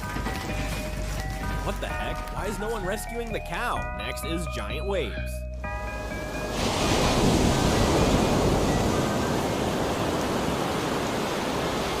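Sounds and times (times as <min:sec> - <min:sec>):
ocean waves breaking: 0:05.9 - 0:12.0.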